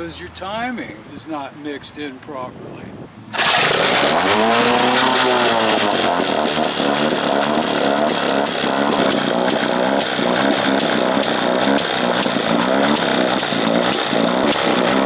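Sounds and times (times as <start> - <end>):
outboard motor running roughly: 3.3 - 15.0
sharp ticking: 3.4 - 15.0.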